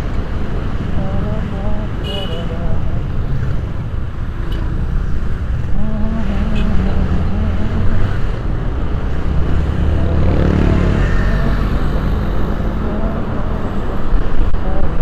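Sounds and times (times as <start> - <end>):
low rumble of traffic: 0.0 - 15.0
vehicle engine running: 0.0 - 15.0.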